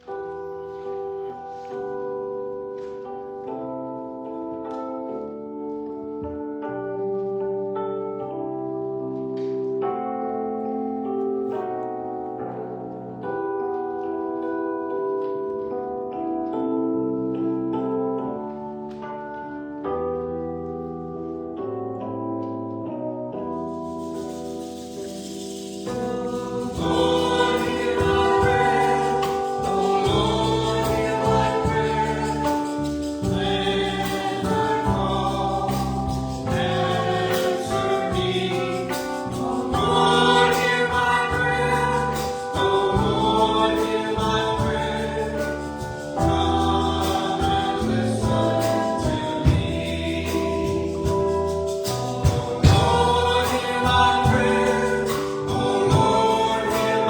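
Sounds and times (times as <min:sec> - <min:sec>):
keyboard accompaniment: 0:00.0 - 0:57.0
choir singing a hymn: 0:24.0 - 0:57.0.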